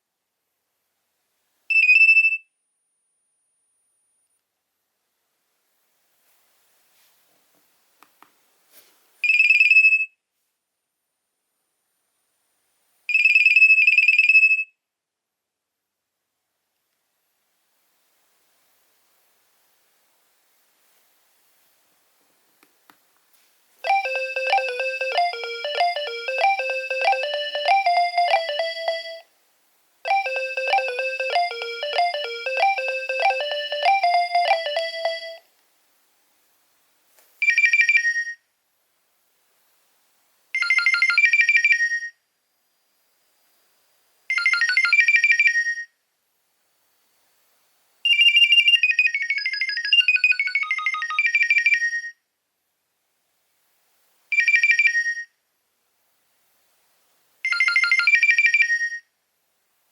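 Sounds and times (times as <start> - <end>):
phone ringtone through small speaker: 23.8 - 29.2, 30.1 - 35.4, 40.6 - 42.0, 44.3 - 45.7, 48.2 - 52.2, 54.4 - 55.3, 57.5 - 59.1.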